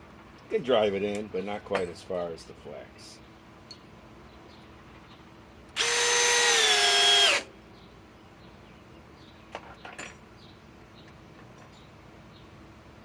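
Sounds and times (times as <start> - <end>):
impact driver running: 5.8 - 7.5.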